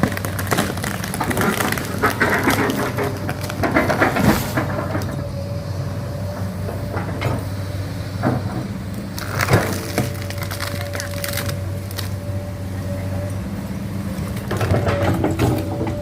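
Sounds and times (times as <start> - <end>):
tree wood cracking: 0.0 - 4.3, 9.2 - 12.2
excavator diesel engine running: 0.0 - 16.0.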